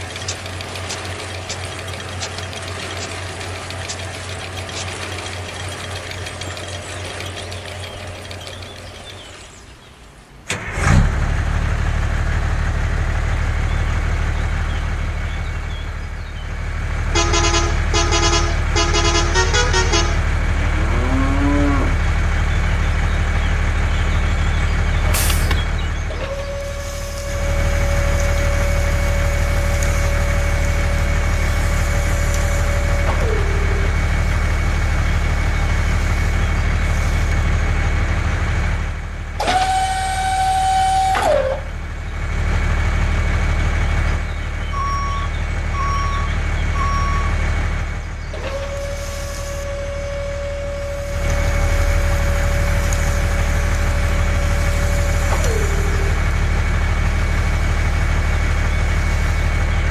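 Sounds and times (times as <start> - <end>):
vehicle engine rumble: 0.0 - 59.9
horn honks: 17.1 - 21.9, 39.4 - 41.7, 48.4 - 56.4
long held tone: 48.4 - 56.4.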